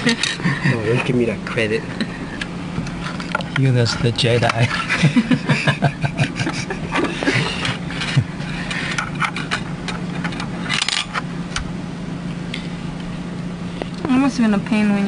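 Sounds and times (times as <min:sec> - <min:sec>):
steady low hum: 0:00.0 - 0:15.0
parts rubbing and clicking: 0:07.0 - 0:11.2.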